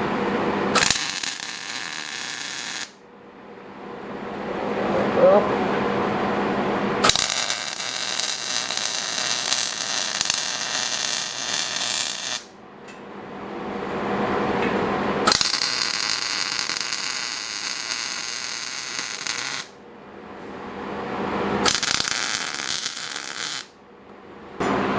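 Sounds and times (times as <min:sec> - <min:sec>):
arc welding crackling hiss: 0:00.8 - 0:03.0, 0:07.0 - 0:12.5, 0:15.3 - 0:19.7, 0:21.6 - 0:23.7.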